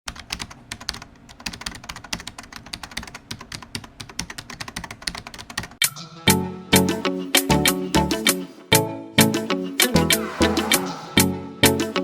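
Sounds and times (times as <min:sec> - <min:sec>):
typing on computer keyboard: 0:00.1 - 0:05.8.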